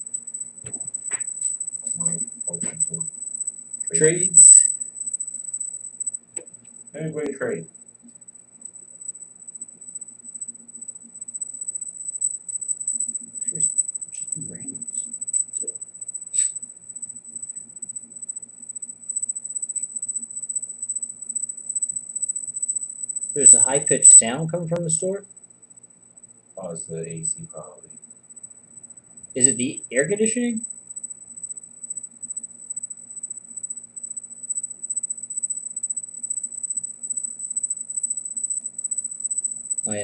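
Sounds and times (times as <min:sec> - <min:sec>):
faint low hum: 0:00.0 - 0:40.0
high-pitched electronic whine: 0:00.0 - 0:40.0.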